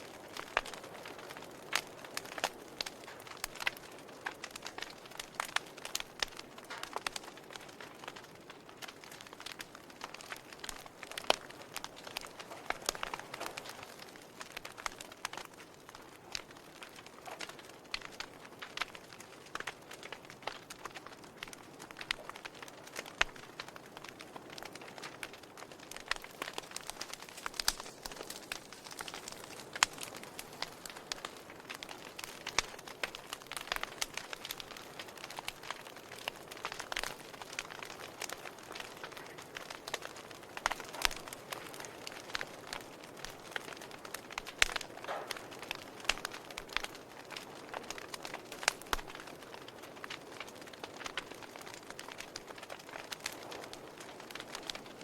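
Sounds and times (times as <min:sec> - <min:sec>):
fire soft hiss: 0:00.0 - 0:55.0
logs crackling and popping: 0:00.0 - 0:55.0
fire hissing: 0:22.9 - 0:49.2.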